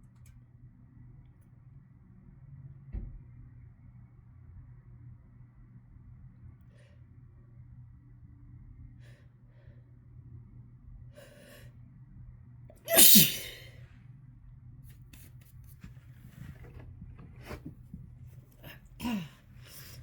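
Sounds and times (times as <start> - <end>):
loud harsh sneeze: 12.9 - 13.7.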